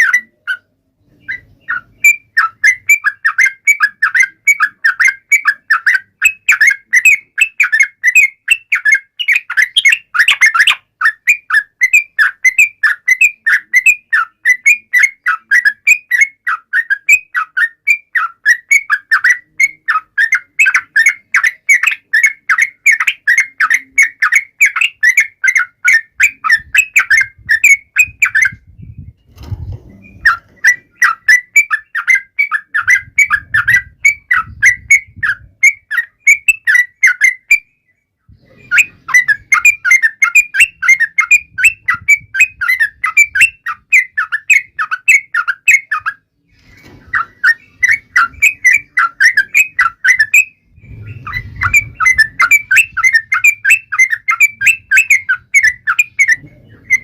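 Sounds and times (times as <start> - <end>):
bird chirping rapidly: 0.0 - 57.0.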